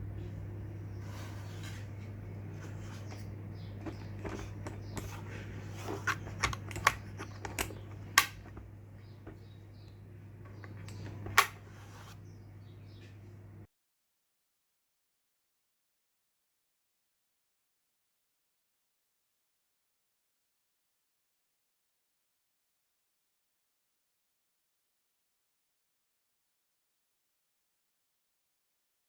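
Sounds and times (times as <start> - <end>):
steady low hum: 0.0 - 13.7.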